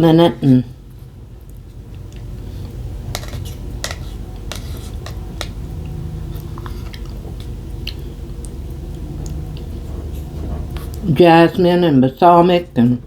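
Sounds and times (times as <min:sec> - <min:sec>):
steady low hum: 0:00.0 - 0:13.0
person chewing: 0:01.3 - 0:11.1.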